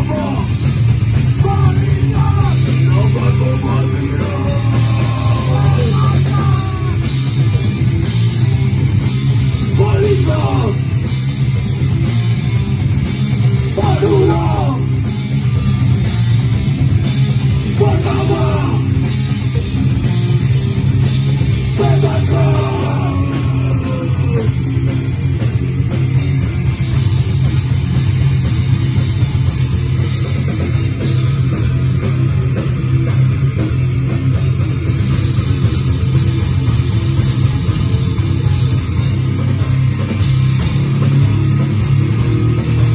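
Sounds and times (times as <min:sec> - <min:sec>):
metal band playing: 0:00.0 - 0:42.9
shouted vocals: 0:01.4 - 0:07.1, 0:09.8 - 0:10.8, 0:13.8 - 0:15.0, 0:17.7 - 0:19.0, 0:21.8 - 0:24.7.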